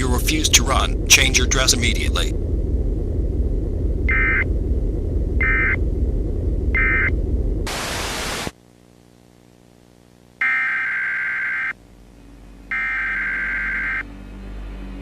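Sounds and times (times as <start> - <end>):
low rumbling noise: 0.0 - 8.5, 11.8 - 15.0
burst of static: 0.0 - 10.2
faint hum: 0.0 - 15.0.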